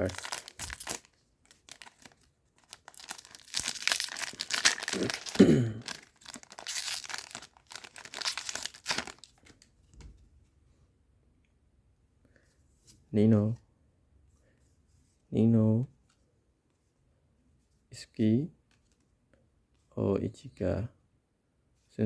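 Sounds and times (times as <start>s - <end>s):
wrapper being torn and crinkled: 0.0s - 9.6s.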